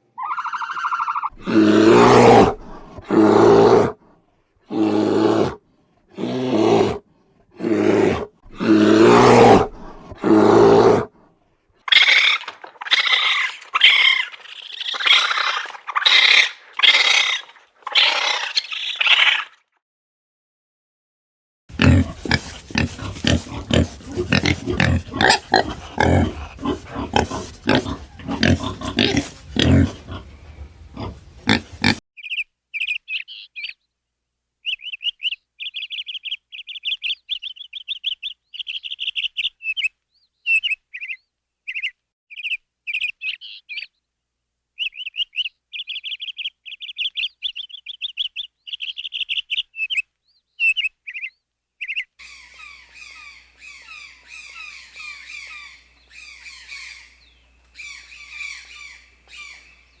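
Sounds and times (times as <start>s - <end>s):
deep animal sound: 0.0s - 4.1s, 4.7s - 11.2s, 21.7s - 32.0s
birds chirping in trills: 21.7s - 33.9s, 44.8s - 60.0s.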